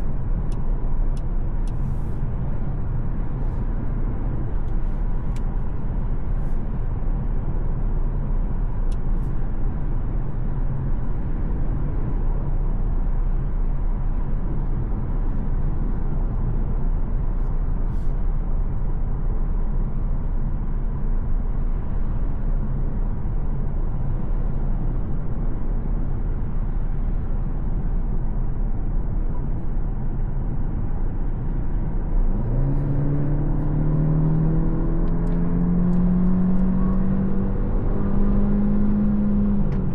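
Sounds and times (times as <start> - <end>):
tyre and road noise: 0.0 - 39.9
car engine accelerating: 31.2 - 39.9.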